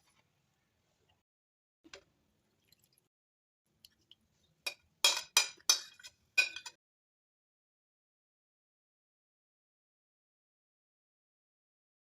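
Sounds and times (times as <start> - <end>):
utensil clinking against bowl: 4.7 - 6.8.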